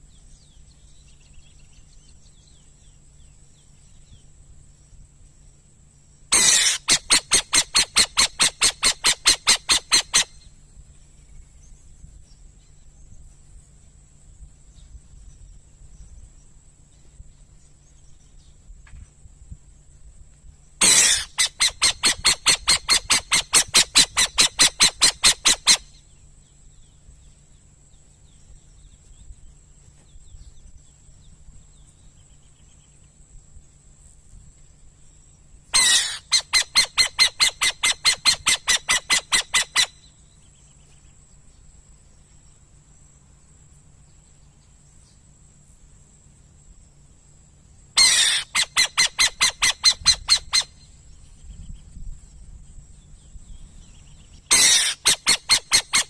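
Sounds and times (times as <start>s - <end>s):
owl rapid chattering calls: 6.3s - 10.6s, 20.8s - 26.1s, 35.7s - 40.5s, 48.0s - 51.6s, 54.1s - 56.0s.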